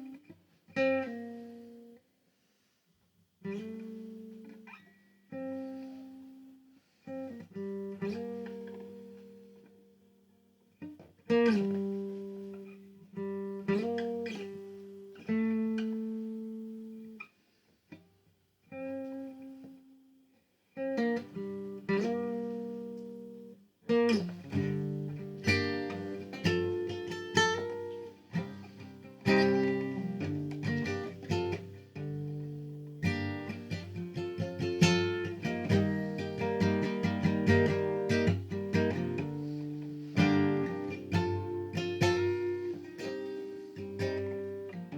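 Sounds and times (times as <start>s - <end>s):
acoustic guitar chords: 20.9s - 44.9s.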